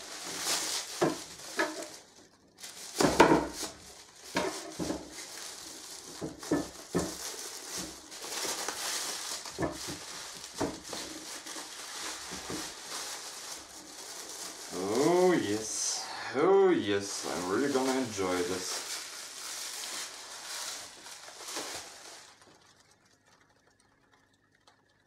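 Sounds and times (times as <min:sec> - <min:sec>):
foil crinkling: 0:00.0 - 0:24.2.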